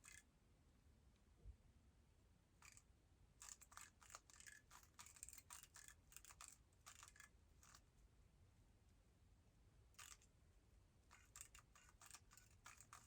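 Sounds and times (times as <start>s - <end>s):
speed cube layers clicking: 3.4s - 7.8s, 11.1s - 13.0s.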